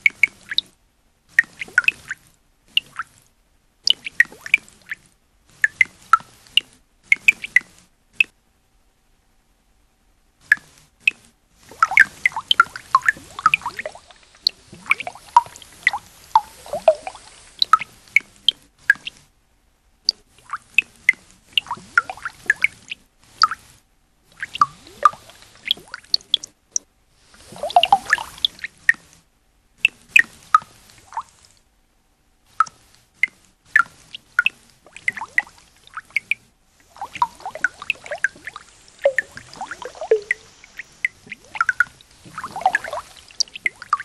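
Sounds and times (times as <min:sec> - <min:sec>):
synthesized bubble blips: 0:10.5 - 0:18.0, 0:21.6 - 0:23.6, 0:24.4 - 0:28.7, 0:33.8 - 0:44.0.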